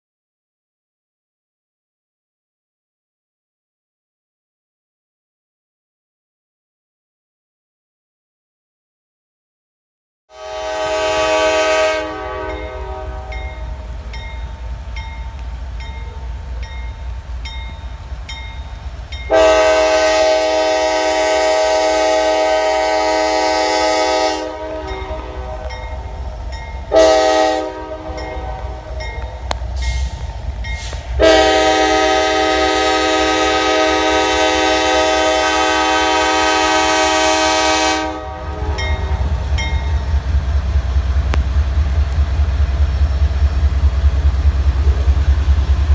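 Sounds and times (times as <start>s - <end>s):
locomotive air horn blasts: 10.3s - 14.1s, 19.3s - 40.3s
diesel engine rumbling: 10.8s - 45.9s.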